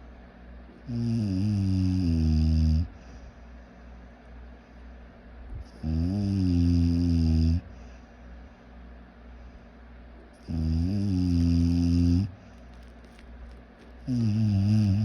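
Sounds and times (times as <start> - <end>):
loud buzzing snore: 0.9 - 3.0, 5.7 - 7.8, 10.4 - 12.4, 14.0 - 15.0.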